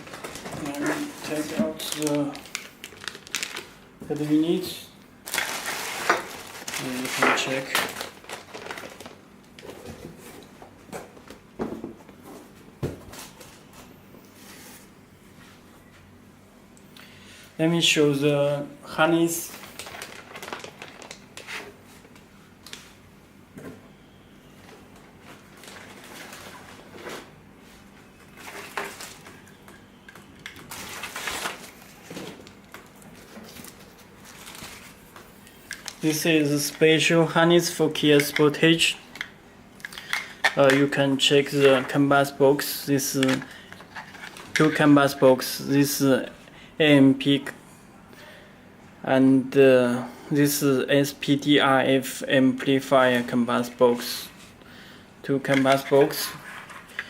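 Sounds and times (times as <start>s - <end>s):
packaging rustling: 0.0s - 4.6s, 5.2s - 10.4s, 19.4s - 21.8s, 25.3s - 27.3s, 28.3s - 29.5s, 30.4s - 36.8s.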